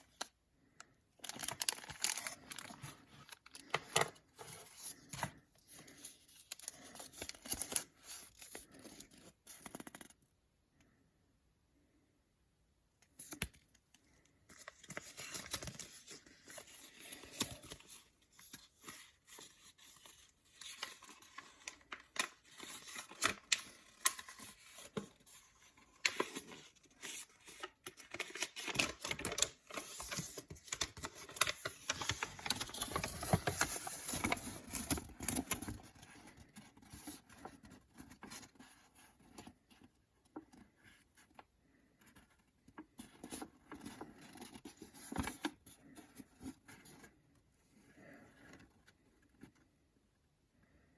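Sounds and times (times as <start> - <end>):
packaging rustling and tearing: 1.2 - 9.6, 14.5 - 38.8.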